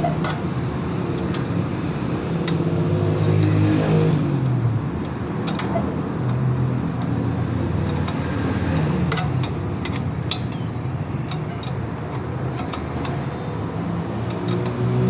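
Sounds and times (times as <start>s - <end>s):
sharp metallic clicks: 7.8s - 13.3s.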